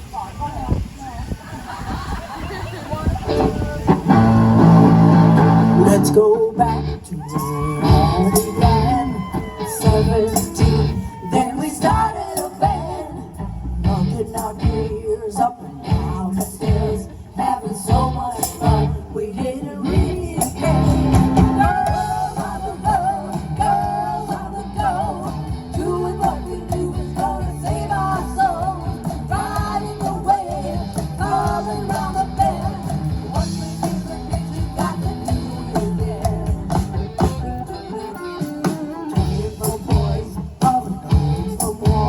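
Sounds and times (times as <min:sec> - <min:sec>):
electric guitar: 0:03.0 - 0:42.0
steady drum beat: 0:03.4 - 0:06.2, 0:06.8 - 0:12.9, 0:19.9 - 0:37.8, 0:38.7 - 0:42.0
woman singing: 0:05.6 - 0:42.0.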